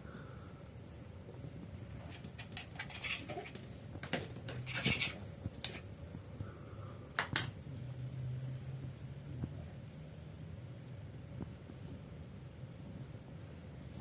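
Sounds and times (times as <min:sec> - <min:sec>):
objects clattering and rustling: 0:02.0 - 0:05.9.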